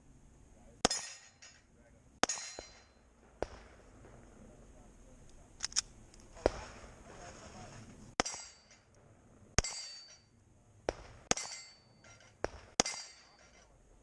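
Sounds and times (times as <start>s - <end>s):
steel plate ringing: 0.8s - 1.6s, 2.2s - 3.1s, 8.2s - 8.9s, 9.6s - 10.4s, 11.3s - 13.7s
pistol shots: 2.2s - 4.4s, 6.4s - 6.9s, 8.2s - 8.6s, 9.6s - 10.1s, 10.8s - 13.4s.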